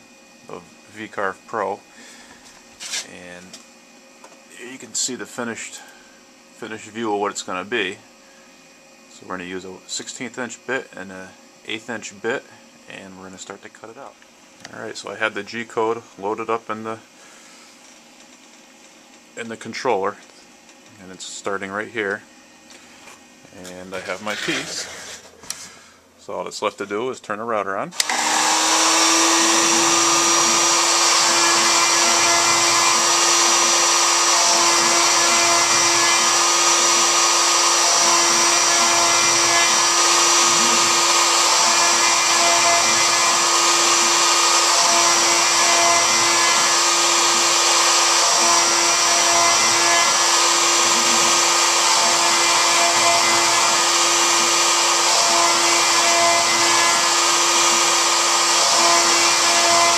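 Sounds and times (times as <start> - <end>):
router spindle running: 28.0 - 59.9.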